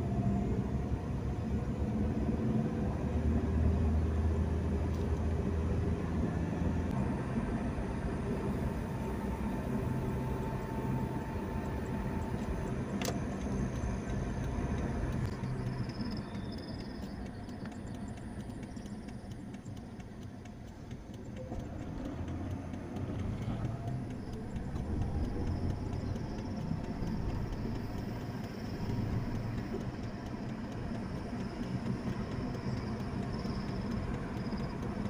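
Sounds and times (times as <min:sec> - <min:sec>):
vehicle engines rumbling: 0:00.0 - 0:35.0
faint high chirps: 0:15.3 - 0:19.3.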